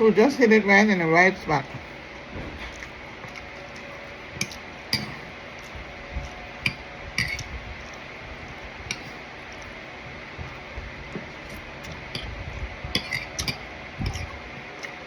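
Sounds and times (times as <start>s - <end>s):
cutlery clinking against dish: 4.4s - 5.3s, 6.6s - 7.5s, 13.0s - 14.3s.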